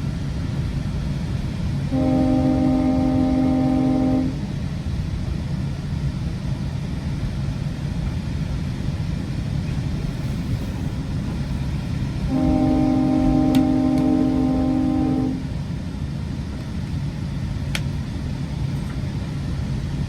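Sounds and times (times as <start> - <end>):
train running rumble: 0.0 - 20.0
train air horn blasts: 1.9 - 4.6, 12.3 - 15.6.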